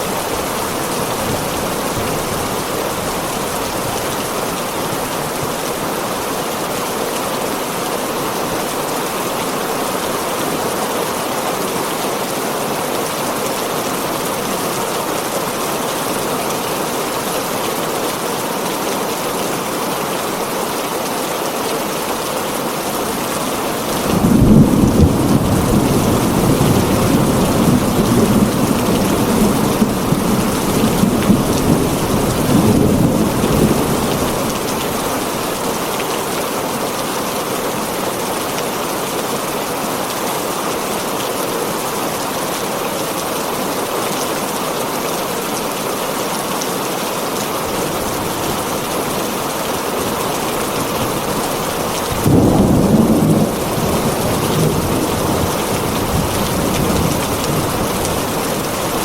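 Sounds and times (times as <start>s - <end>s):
heavy rain on a tin roof: 0.0s - 59.0s
rolling thunder rumble: 23.9s - 35.0s, 52.2s - 59.0s.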